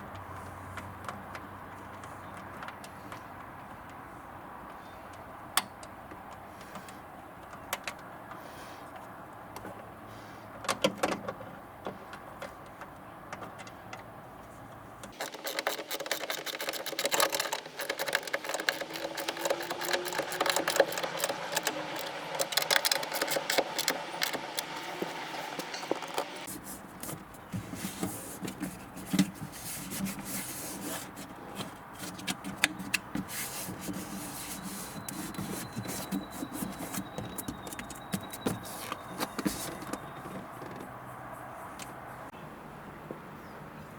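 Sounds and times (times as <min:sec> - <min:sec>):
metallic clicking and rattling: 0:15.1 - 0:26.5.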